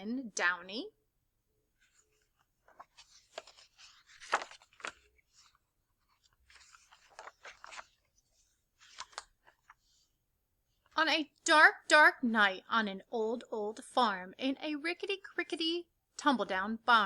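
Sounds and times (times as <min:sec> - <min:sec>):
book pages rustling: 0:01.7 - 0:10.2.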